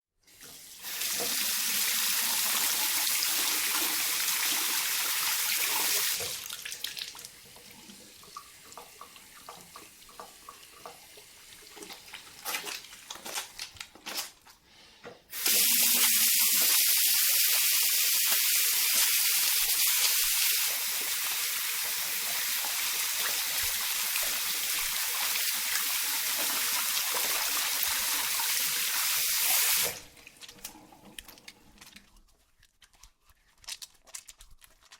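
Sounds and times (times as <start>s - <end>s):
tap water running into sink: 0.3s - 13.6s, 15.3s - 31.7s
wet hands rubbing and splashing: 11.5s - 14.7s, 15.3s - 34.9s.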